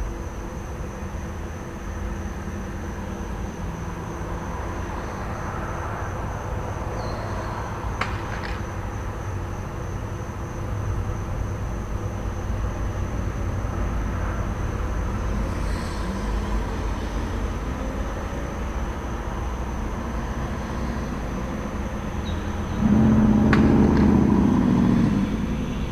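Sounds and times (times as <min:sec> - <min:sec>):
crickets chirping: 0:00.0 - 0:25.9
passing traffic: 0:00.8 - 0:25.9
truck engine idling: 0:18.6 - 0:25.9
engine rising in pitch: 0:19.6 - 0:25.9.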